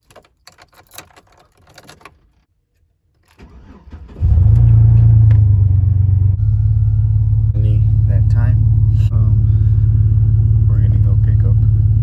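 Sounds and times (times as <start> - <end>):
car interior low drone: 4.2 - 12.0.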